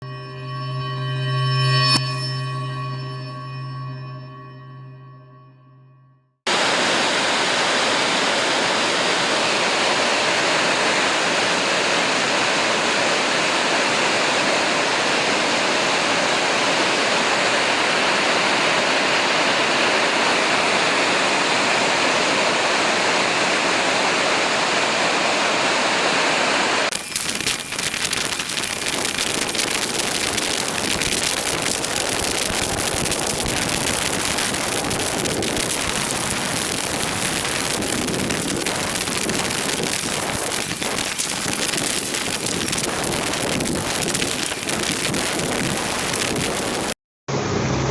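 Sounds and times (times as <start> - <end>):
heavy rain pouring: 6.5 - 47.0
drops or hail ticking on surfaces: 26.9 - 47.0.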